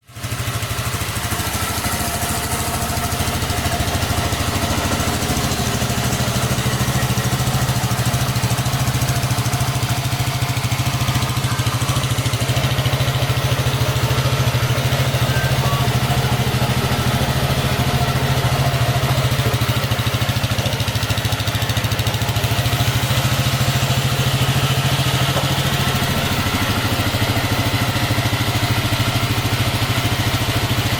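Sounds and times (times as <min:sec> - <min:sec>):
scooter engine idling: 0:00.0 - 0:30.9.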